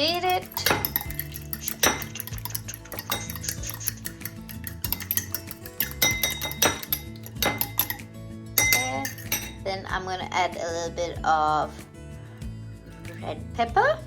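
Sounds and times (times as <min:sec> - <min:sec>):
utensil clinking against bowl: 0:00.0 - 0:09.7
background music: 0:00.0 - 0:14.0.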